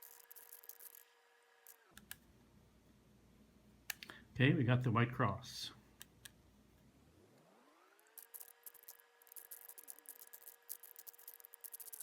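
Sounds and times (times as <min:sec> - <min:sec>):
faint rising tone: 0:07.0 - 0:08.1
puzzle cube clicking: 0:08.2 - 0:12.0.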